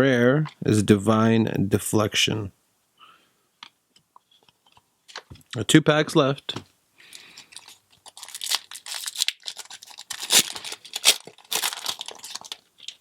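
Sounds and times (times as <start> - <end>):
foil wrapper tearing and crinkling: 7.4 - 13.0.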